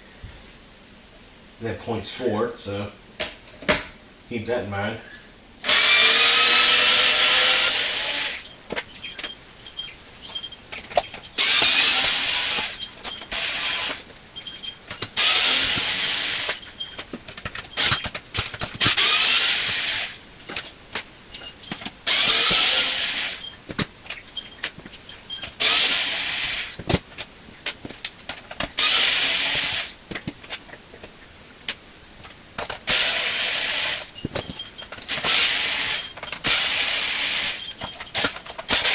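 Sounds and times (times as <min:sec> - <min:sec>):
power drill whirring: 0:05.6 - 0:20.2, 0:21.3 - 0:23.6, 0:25.1 - 0:26.8, 0:28.8 - 0:30.0, 0:32.9 - 0:38.9.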